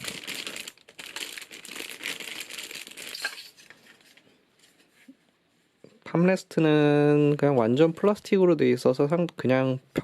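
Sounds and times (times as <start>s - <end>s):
plastic packaging crinkling: 0.0s - 4.2s.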